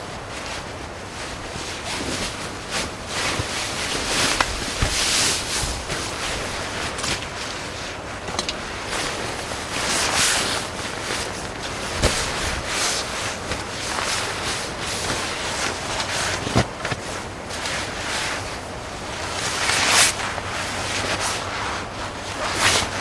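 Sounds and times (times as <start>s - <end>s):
wind gusting: 2.4s - 9.9s.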